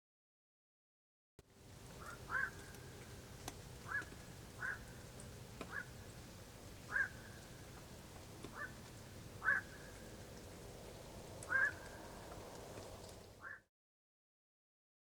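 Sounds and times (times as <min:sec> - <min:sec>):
bird giving harsh calls: 0:02.0 - 0:02.9, 0:03.8 - 0:05.0, 0:05.7 - 0:06.0, 0:06.8 - 0:07.4, 0:09.4 - 0:10.0, 0:11.5 - 0:12.2, 0:13.4 - 0:13.6.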